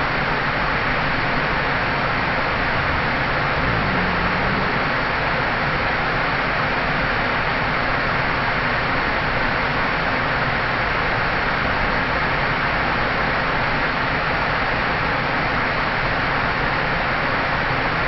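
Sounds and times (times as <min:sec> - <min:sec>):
waterfall rushing: 0:02.1 - 0:05.6.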